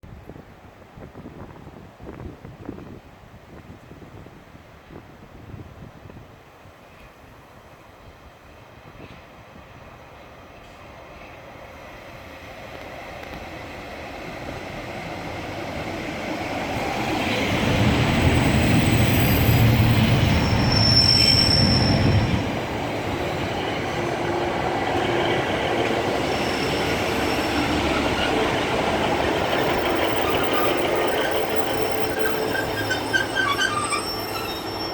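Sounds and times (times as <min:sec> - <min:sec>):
diesel train rumbling: 0:08.5 - 0:34.9
wheels and brakes squealing: 0:18.2 - 0:22.5, 0:25.2 - 0:34.9.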